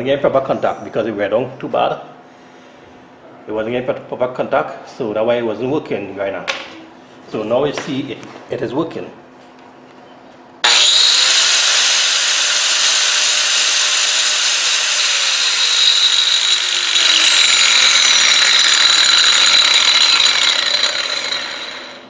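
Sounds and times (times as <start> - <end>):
angle grinder whining: 10.6 - 22.0.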